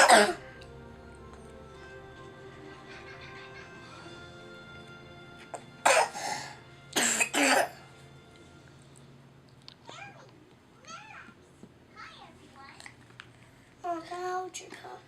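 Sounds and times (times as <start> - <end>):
toddler coughing: 0.0 - 0.4, 5.9 - 6.3, 7.0 - 7.8.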